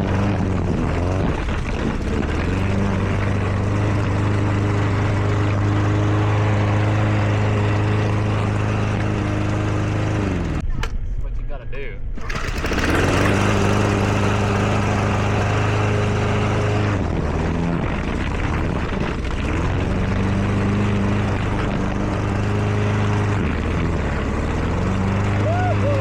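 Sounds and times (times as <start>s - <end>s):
lawn mower engine running: 0.0s - 10.6s, 12.2s - 26.0s.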